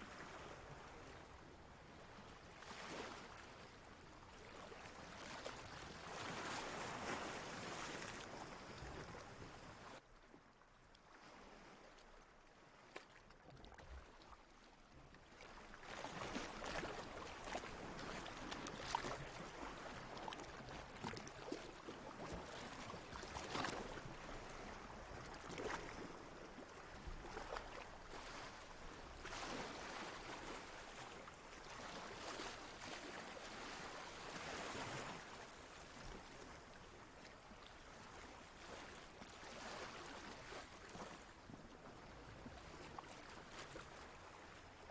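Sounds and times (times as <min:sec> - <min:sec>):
water lapping and sloshing: 0:00.0 - 0:44.9
small water splashes: 0:11.0 - 0:44.9.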